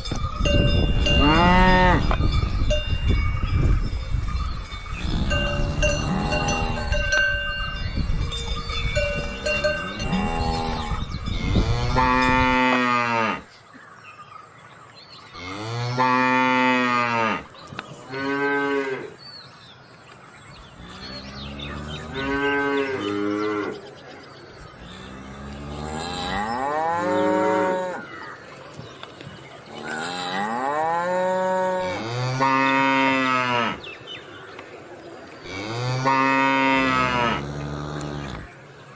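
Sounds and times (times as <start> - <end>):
cowbells ringing: 0.0 - 13.0
cows mooing: 1.0 - 2.8, 4.7 - 13.5, 15.3 - 17.5, 18.1 - 19.2, 20.7 - 23.8, 24.8 - 28.1, 29.7 - 33.9, 35.5 - 38.5.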